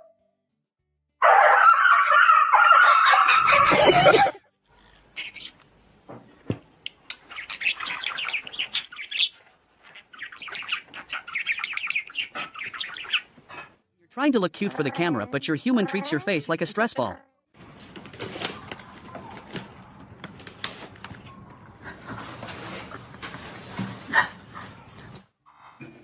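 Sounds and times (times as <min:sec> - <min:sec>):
dense bird squawking: 0:01.9 - 0:04.3.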